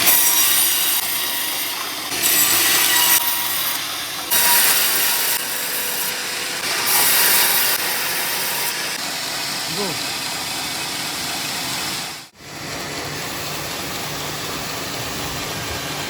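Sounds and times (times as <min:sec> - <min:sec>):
sawmill blade cutting log: 0:00.0 - 0:11.2.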